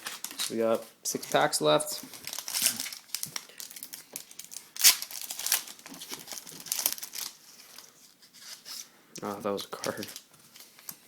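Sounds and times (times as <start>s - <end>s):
foil wrapper crinkling and tearing: 0.0s - 8.8s.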